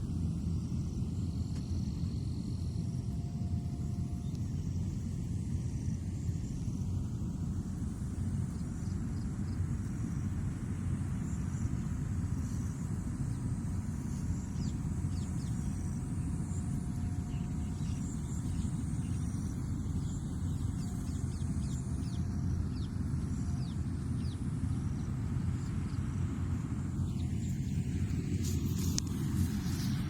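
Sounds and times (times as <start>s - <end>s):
harvester engine rumbling: 0.0s - 30.0s
faint bird chirps: 7.5s - 26.3s.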